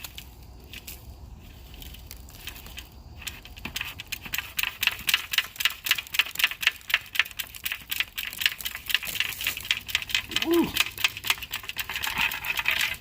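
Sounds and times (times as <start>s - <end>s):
carpet debris crackling: 5.0s - 13.0s.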